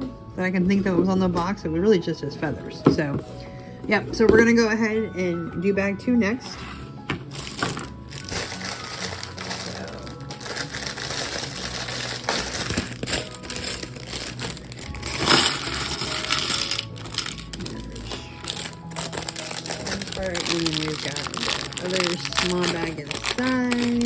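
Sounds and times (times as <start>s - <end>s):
plastic bag crinkling: 7.3s - 24.0s
plastic pieces clattering: 7.3s - 24.0s.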